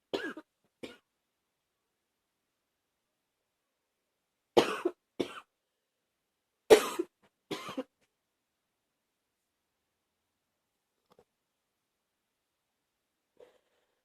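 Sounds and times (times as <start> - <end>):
woman coughing: 0.2 - 1.0, 4.6 - 5.5, 6.7 - 7.9.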